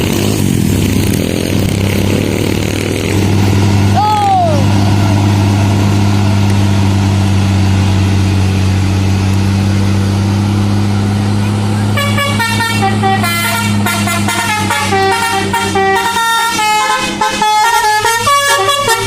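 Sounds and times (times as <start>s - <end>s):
bus engine humming: 0.0s - 19.0s
voices: 3.9s - 4.8s.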